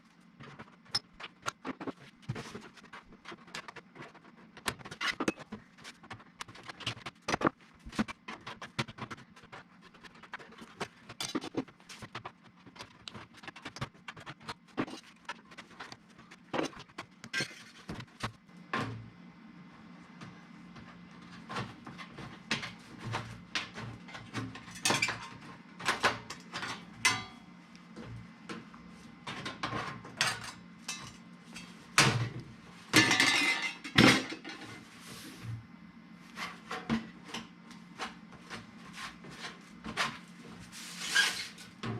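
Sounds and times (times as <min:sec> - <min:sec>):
steady low hum: 0:00.0 - 0:41.9
tools and parts clattering: 0:32.9 - 0:34.8.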